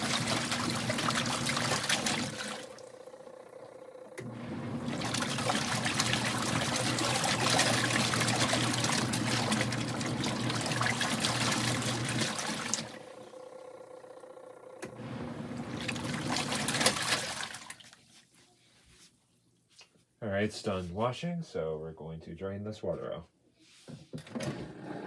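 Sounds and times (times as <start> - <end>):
low motor hum: 0.0 - 17.1
washing machine churning water: 0.0 - 18.2, 24.3 - 25.0.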